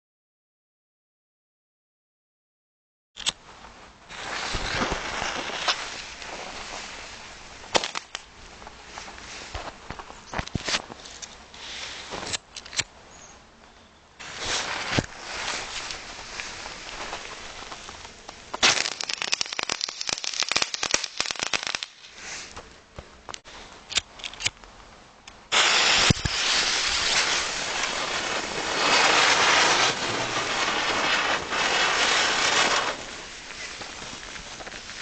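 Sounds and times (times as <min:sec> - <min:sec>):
loud steady hissing: 0:03.5 - 0:12.3, 0:14.1 - 0:35.0
firework pops: 0:04.1 - 0:06.6, 0:07.7 - 0:08.3, 0:14.2 - 0:22.6, 0:25.5 - 0:35.0
fireworks crackling: 0:04.1 - 0:12.4, 0:14.2 - 0:22.6, 0:25.5 - 0:35.0
firework bang: 0:18.6 - 0:20.2, 0:25.5 - 0:33.3.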